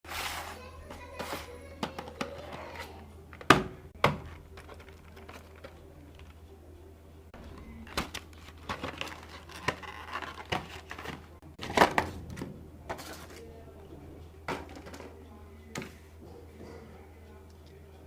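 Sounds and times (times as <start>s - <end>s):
packaging crinkling and tearing: 7.9s - 11.8s.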